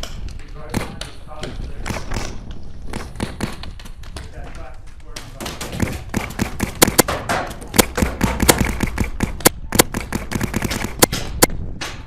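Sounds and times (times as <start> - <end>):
paintball markers firing: 0.0 - 4.5, 5.1 - 12.0
wind rumbling on microphone: 7.6 - 12.0.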